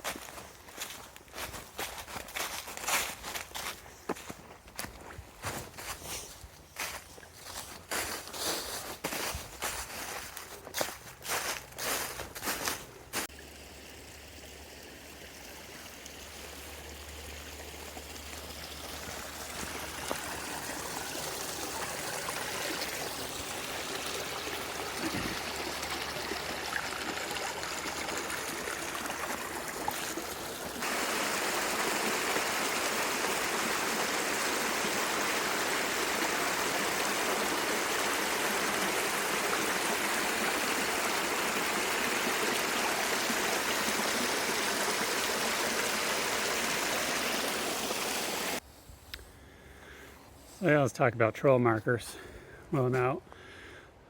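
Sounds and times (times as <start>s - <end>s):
river flowing: 10.5s - 48.6s.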